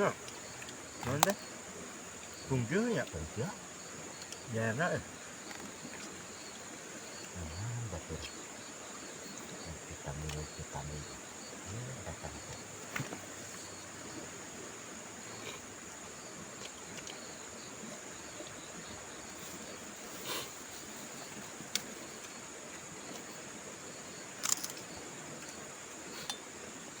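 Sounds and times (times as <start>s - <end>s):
high-pitched insect chirring: 0.0s - 12.8s.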